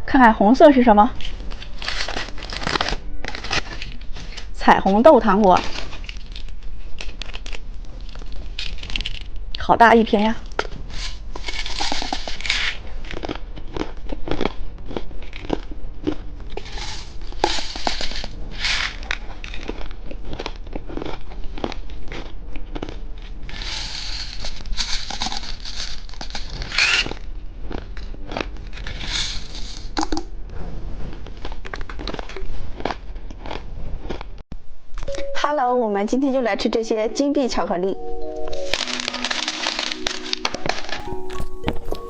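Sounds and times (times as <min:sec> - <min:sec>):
plastic wrapper crinkling: 0:01.2 - 0:04.6, 0:05.6 - 0:09.4, 0:10.5 - 0:13.3, 0:38.6 - 0:42.0.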